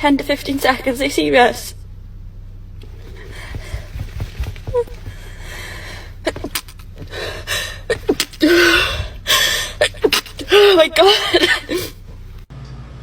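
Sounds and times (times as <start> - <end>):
woman gasping and breathing: 3.0 - 12.1
woman sneezing: 7.8 - 12.1.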